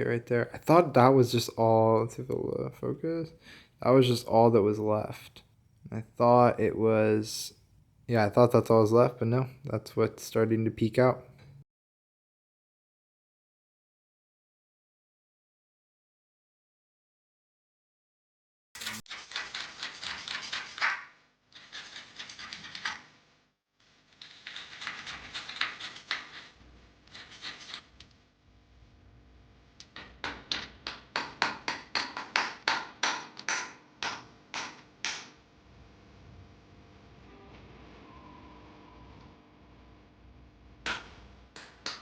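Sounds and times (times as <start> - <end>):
sandpaper rubbing on metal rim: 24.2 - 27.9.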